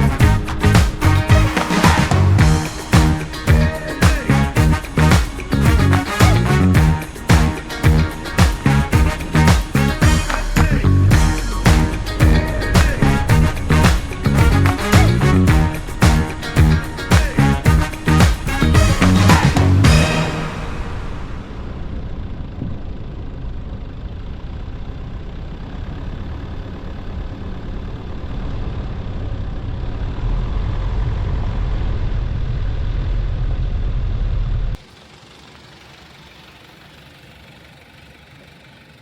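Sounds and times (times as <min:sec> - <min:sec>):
steady hum: 0:00.0 - 0:23.8
off-road vehicle engine and road noise: 0:00.0 - 0:39.0.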